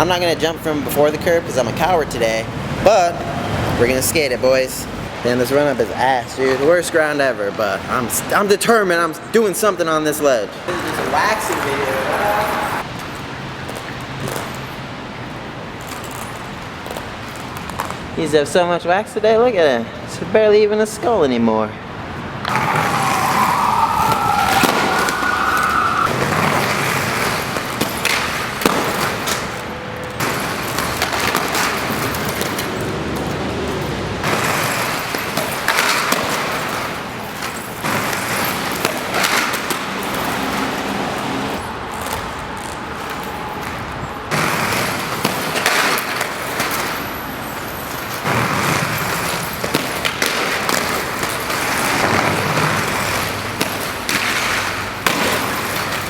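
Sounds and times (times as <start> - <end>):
skates sliding on ledge: 22.4 - 26.7.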